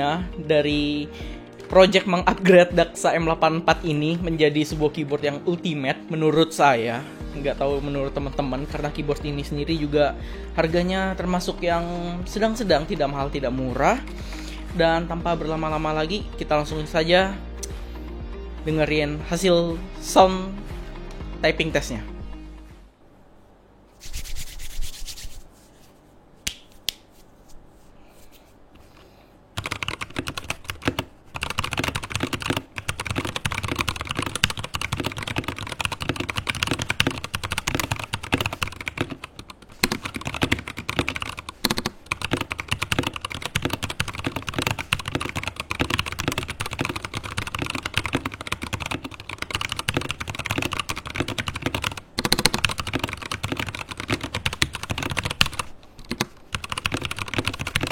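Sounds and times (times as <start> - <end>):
mechanical keyboard typing: 29.6 - 57.9.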